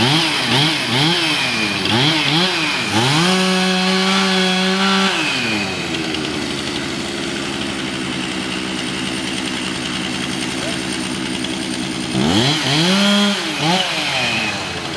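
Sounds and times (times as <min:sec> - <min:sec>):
chainsaw engine revving and idling: 0:00.0 - 0:14.9.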